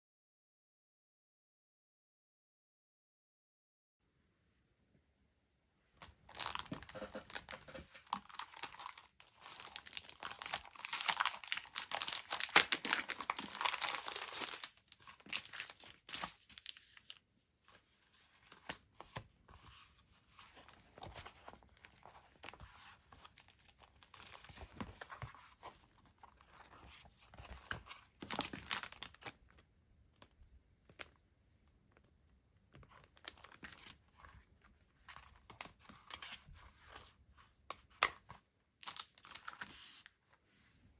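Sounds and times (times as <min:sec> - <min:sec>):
packaging crinkling and tearing: 0:06.0 - 0:17.2, 0:23.2 - 0:25.0, 0:27.6 - 0:29.4, 0:38.8 - 0:40.0.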